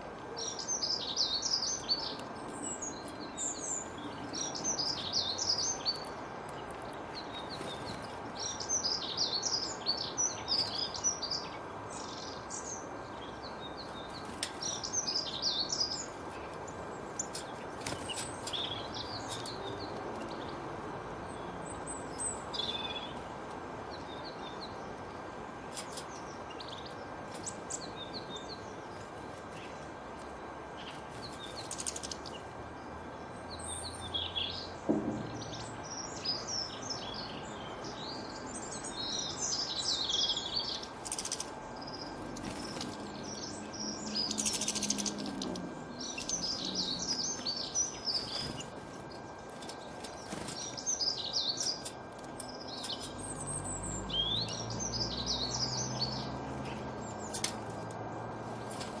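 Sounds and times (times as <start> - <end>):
sharp bird clicks: 31.5 - 32.4, 40.7 - 41.5, 44.1 - 45.6.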